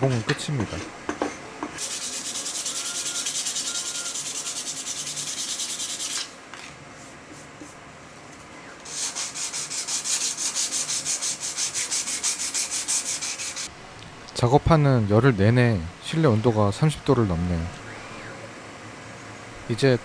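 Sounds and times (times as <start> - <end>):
sandpaper rubbing wood: 1.8 - 6.3, 8.9 - 13.7.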